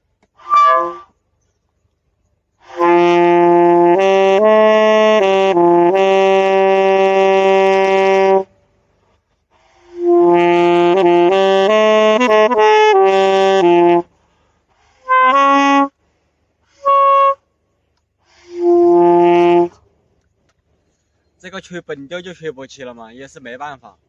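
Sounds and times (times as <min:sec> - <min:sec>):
solo wind instrument: 0:00.4 - 0:01.2, 0:02.6 - 0:08.6, 0:09.5 - 0:19.8.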